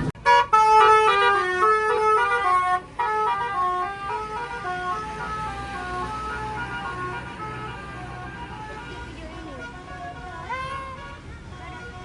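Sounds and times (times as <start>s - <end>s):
bus musical horn melody: 0.0s - 12.0s.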